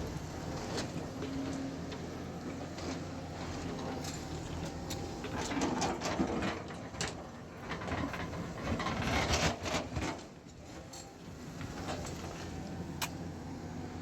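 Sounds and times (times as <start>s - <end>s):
clanks knocks and scraping: 2.6s - 11.1s.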